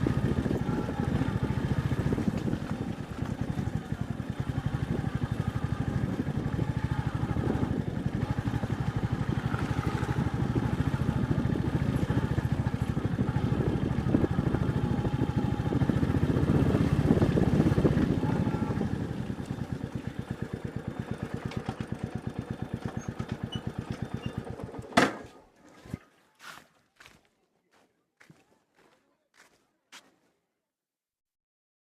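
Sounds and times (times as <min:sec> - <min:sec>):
motorcycle engine running: 0:00.0 - 0:25.0.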